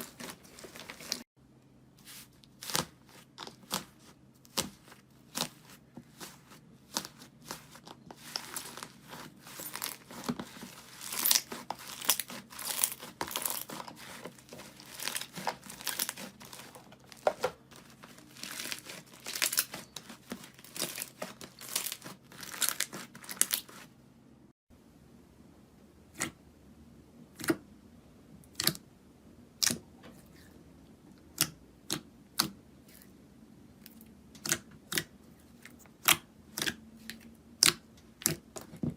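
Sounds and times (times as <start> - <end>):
slime crackling and popping: 6.9 - 16.8, 17.8 - 23.8.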